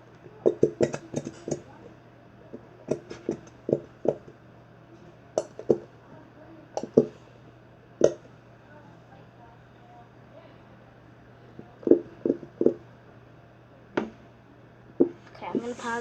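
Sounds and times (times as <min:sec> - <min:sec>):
plastic bottle clicks and taps: 0:00.4 - 0:01.6, 0:05.4 - 0:05.8.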